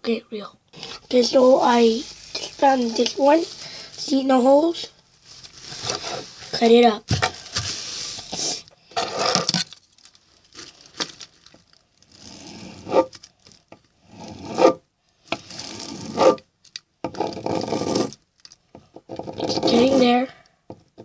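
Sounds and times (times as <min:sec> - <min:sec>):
knife sawing through cardboard: 0:15.4 - 0:16.4, 0:17.3 - 0:18.1, 0:19.5 - 0:20.2.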